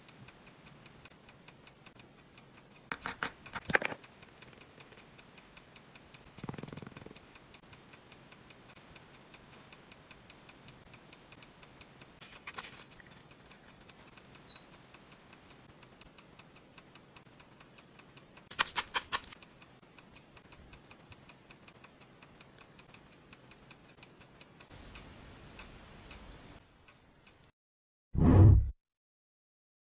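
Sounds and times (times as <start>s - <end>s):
faint regular ticking: 0.0s - 12.2s, 12.8s - 27.5s
rapid clicking bursts: 0.1s - 12.2s.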